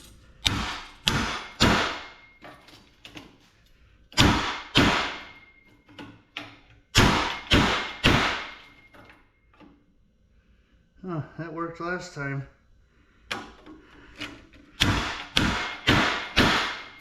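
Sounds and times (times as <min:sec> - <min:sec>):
hammer ringing strikes on metal: 0:00.4 - 0:02.4.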